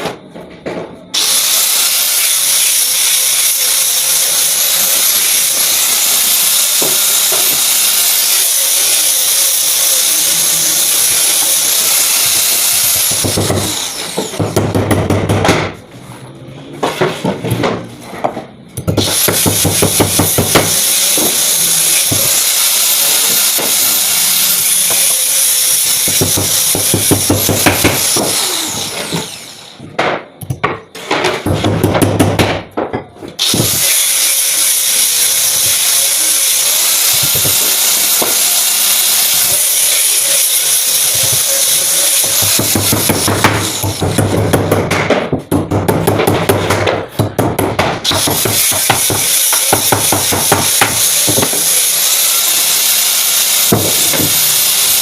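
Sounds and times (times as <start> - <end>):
power tool whining: 1.2 - 14.4, 19.0 - 29.9, 33.4 - 44.2, 48.0 - 55.0
sharp knocks: 13.2 - 15.8, 30.0 - 33.7, 42.3 - 51.6.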